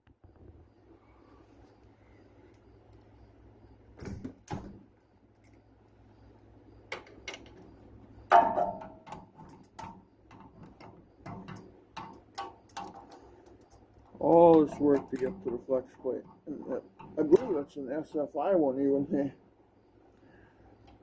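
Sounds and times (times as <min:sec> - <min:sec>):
ringing metal clank: 0:08.3 - 0:09.2.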